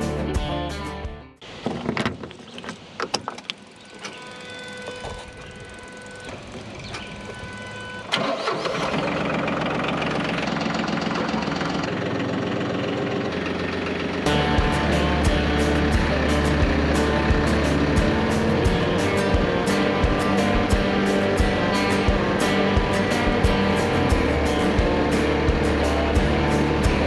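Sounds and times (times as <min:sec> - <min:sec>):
mower engine starting and running: 0:08.1 - 0:27.0.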